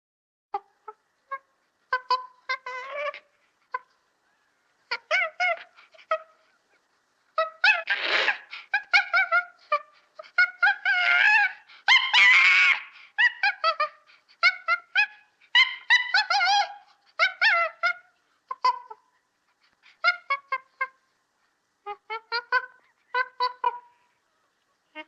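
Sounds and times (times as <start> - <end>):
monkey screeches: 7.4 - 9.5, 10.4 - 18.0.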